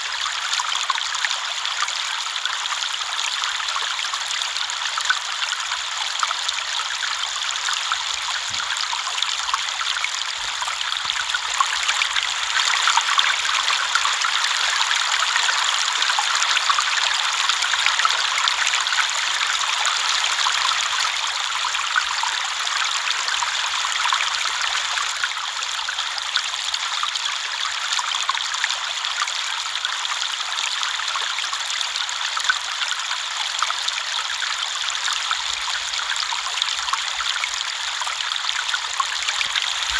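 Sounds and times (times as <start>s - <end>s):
river flowing over stones: 32.8s - 39.9s.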